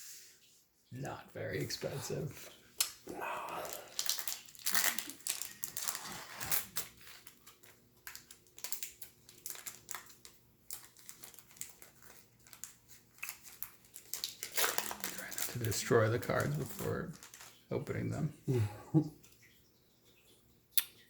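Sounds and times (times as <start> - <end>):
wrapper crinkling and tearing: 1.5 - 18.2.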